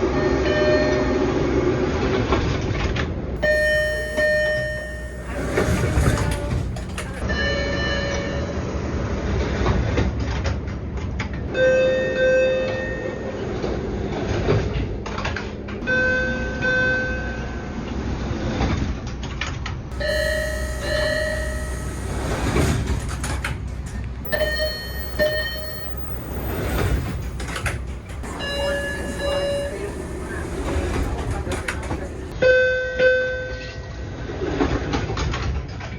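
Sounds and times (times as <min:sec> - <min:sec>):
rumble of trains: 0:00.0 - 0:32.6
subway door two-note chimes: 0:03.4 - 0:08.2, 0:19.9 - 0:32.4.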